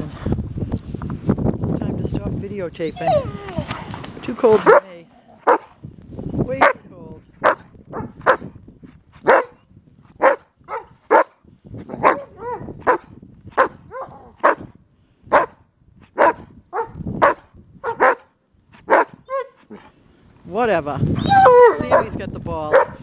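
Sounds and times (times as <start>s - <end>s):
dog yelping: 2.9s - 3.9s, 12.0s - 13.0s, 13.6s - 14.6s, 16.2s - 18.2s, 18.9s - 19.8s, 21.2s - 22.1s
dog barking: 4.6s - 5.7s, 7.4s - 8.5s, 9.2s - 9.6s, 10.2s - 14.7s, 15.3s - 15.6s, 16.2s - 19.8s, 21.4s - 22.1s, 22.7s - 23.0s.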